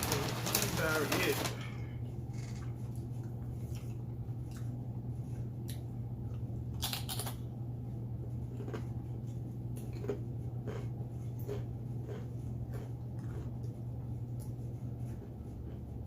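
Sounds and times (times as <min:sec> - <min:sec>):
steady low hum: 0:00.0 - 0:16.0
chewing crunches: 0:05.6 - 0:07.5, 0:08.2 - 0:16.0.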